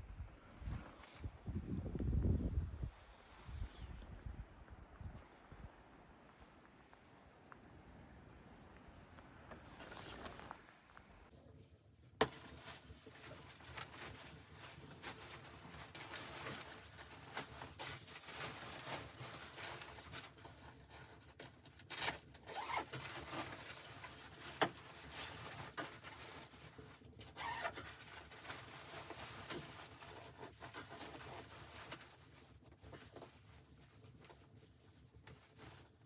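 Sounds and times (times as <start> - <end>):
rustling and scraping: 11.3 - 36.0.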